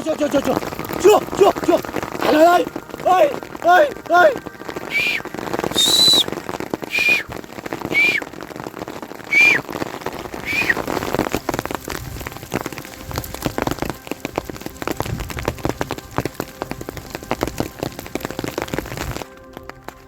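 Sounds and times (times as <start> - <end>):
rain patter: 0.0 - 20.0
whistled notes: 0.9 - 8.4, 9.2 - 11.0.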